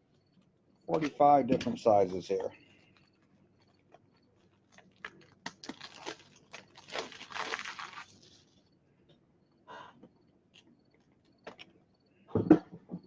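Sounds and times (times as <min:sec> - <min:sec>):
plastic crinkling rustle: 0:02.7 - 0:08.6.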